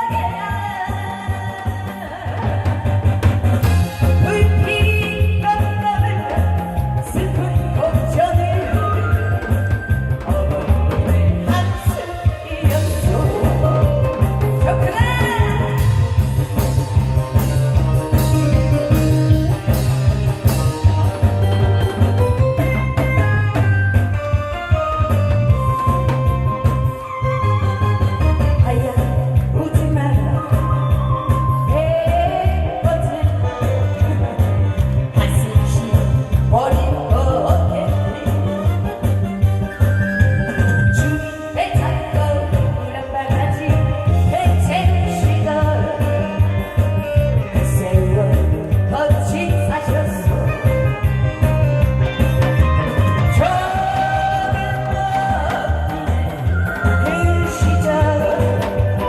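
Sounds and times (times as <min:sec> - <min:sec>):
backing track with heavy beat: 0:00.0 - 0:59.0
person singing through a pa: 0:04.1 - 0:15.9, 0:53.2 - 0:59.0.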